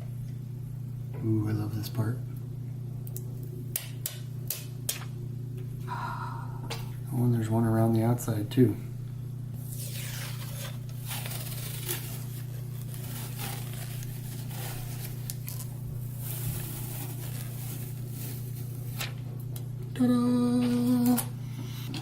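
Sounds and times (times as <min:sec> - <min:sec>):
steady low hum: 0:00.0 - 0:22.0
plastic film crinkling: 0:09.6 - 0:19.3.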